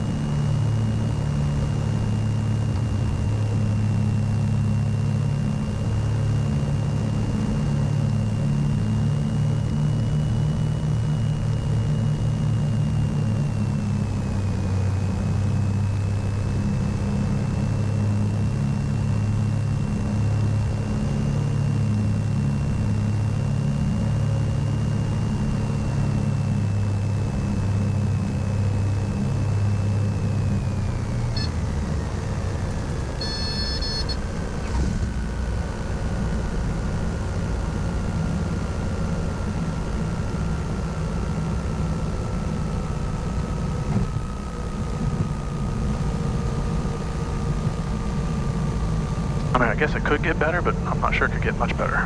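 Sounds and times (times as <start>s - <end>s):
aircraft engines droning: 0.0s - 52.0s
thin high whine: 33.1s - 34.4s
short high beeping tone: 33.2s - 34.2s.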